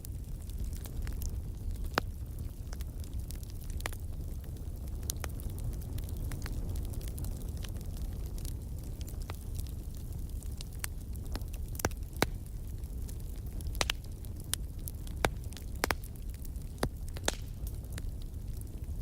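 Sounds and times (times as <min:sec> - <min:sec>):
low rumble of flames: 0:00.0 - 0:19.0
wood fire crackling: 0:00.0 - 0:19.0
sharp pops and snaps: 0:13.7 - 0:14.1, 0:15.2 - 0:16.1, 0:16.8 - 0:17.7.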